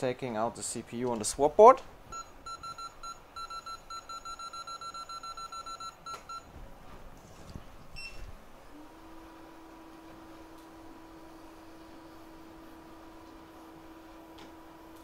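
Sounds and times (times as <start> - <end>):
steady low hum: 0.0 - 15.0
rapid high-pitched beeps: 2.2 - 6.4.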